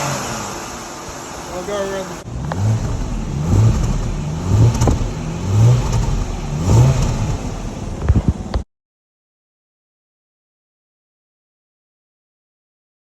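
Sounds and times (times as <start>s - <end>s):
car engine revving: 0.0s - 8.6s.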